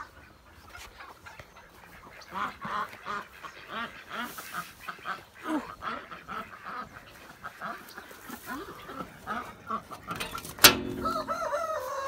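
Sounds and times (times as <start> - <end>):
young turkeys chirping: 6.1 - 12.0
sharp clank: 9.9 - 11.6.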